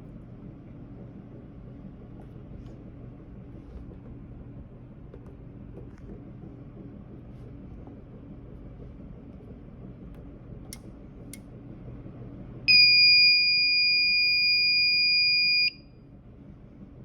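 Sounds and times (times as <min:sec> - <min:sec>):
high-pitched alarm beep: 0:12.7 - 0:15.8.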